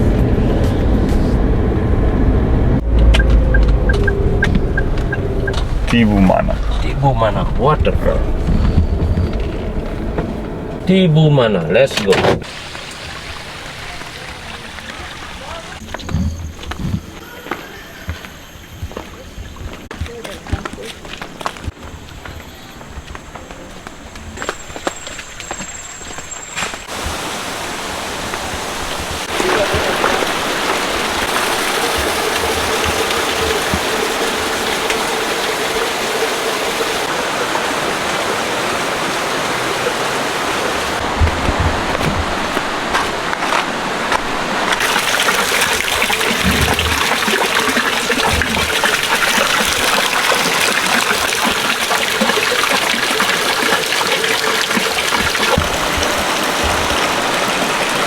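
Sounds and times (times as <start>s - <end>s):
waterfall rushing: 2.8s - 15.8s, 26.9s - 58.0s.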